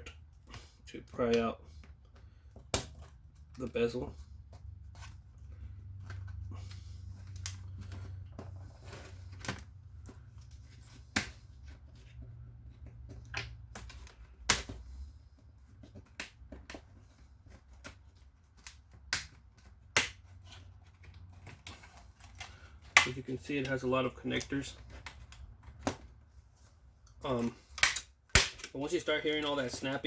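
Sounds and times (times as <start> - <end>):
plastic clips snapping: 27.7 - 28.8.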